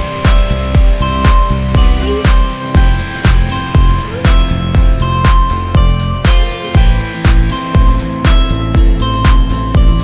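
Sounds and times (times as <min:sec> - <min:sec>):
held synth notes: 0:00.0 - 0:08.0
upbeat background music: 0:00.0 - 0:10.0
strong drum hits: 0:01.3 - 0:06.3.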